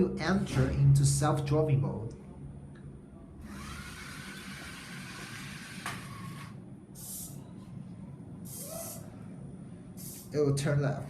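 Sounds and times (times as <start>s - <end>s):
small gear motors whirring: 3.4s - 6.6s.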